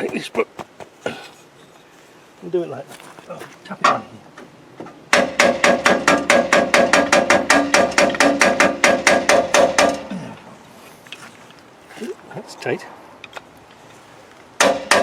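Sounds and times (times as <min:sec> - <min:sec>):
rapid metal-on-metal tapping: 0:05.1 - 0:10.1, 0:14.6 - 0:15.0.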